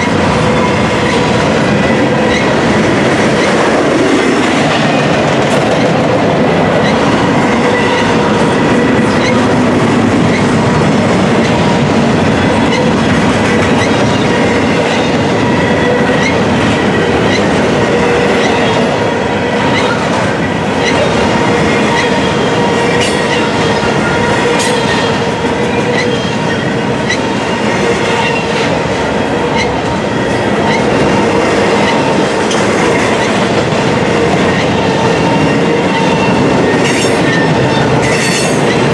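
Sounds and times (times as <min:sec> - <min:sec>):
train wheels clicking over rail joints: 0:00.0 - 0:38.9
wheels squealing on rails: 0:00.0 - 0:38.9.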